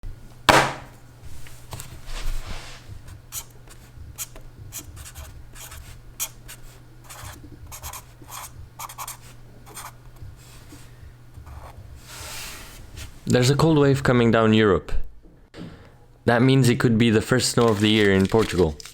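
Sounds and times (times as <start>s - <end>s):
steady low hum: 0.1s - 17.5s
sharp knock: 0.5s - 0.9s.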